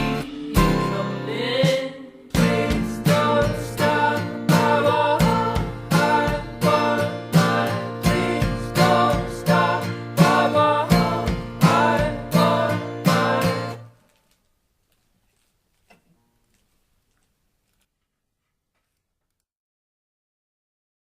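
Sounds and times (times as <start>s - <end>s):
strummed acoustic guitar folk-pop: 0.0s - 13.9s.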